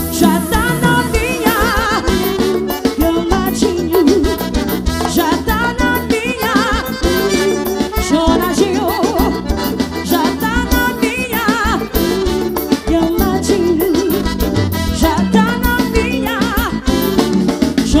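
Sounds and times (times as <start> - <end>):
accordion melody: 0.0 - 18.0
bass: 0.0 - 18.0
steady drum beat: 0.0 - 18.0.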